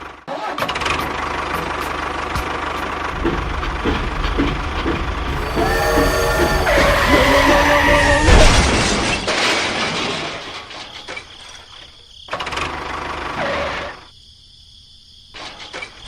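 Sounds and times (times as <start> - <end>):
engine noise bursts: 3.1 - 9.4.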